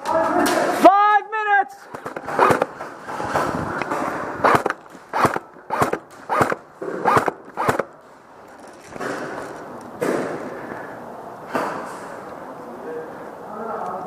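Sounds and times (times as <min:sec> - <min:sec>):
airsoft gun firing bursts: 0:01.9 - 0:02.8, 0:04.4 - 0:08.0.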